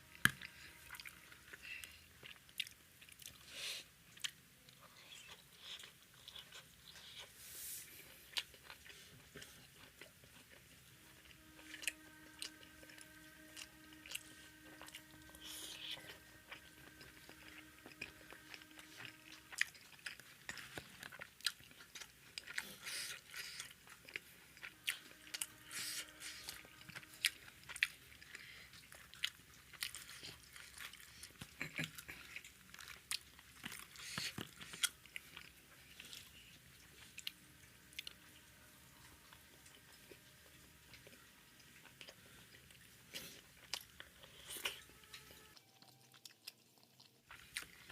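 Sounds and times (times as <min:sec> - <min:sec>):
faint steady hum: 0:00.0 - 0:47.9
person chewing up close: 0:00.0 - 0:47.9.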